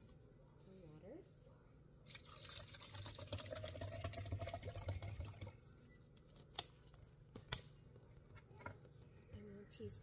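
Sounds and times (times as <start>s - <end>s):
water pouring into a cup: 2.0s - 5.7s.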